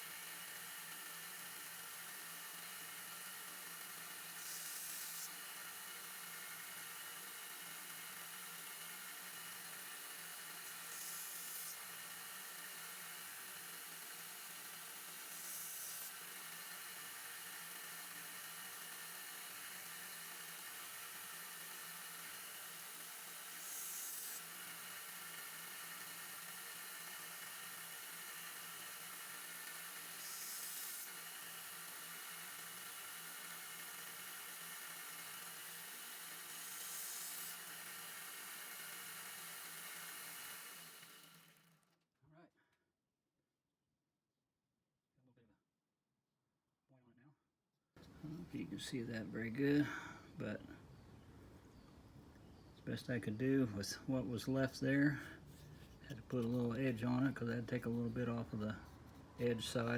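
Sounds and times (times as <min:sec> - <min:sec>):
blade grinding on belt: 0:00.0 - 0:41.7, 0:53.0 - 0:59.9
belt sander running: 0:00.0 - 0:41.9, 0:54.1 - 0:59.9.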